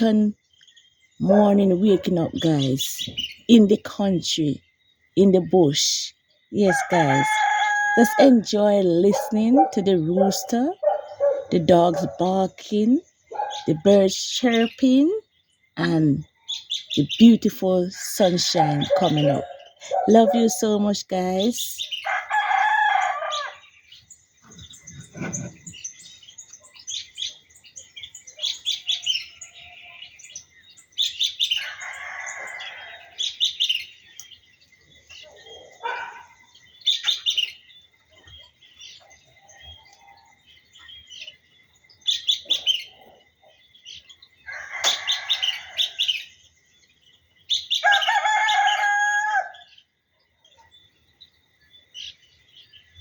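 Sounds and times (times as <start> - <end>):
songbirds chirping: 0.0 - 53.0
roosters crowing: 6.6 - 12.1, 17.7 - 20.7, 21.8 - 25.9, 31.4 - 33.5, 44.3 - 46.4, 47.5 - 49.8.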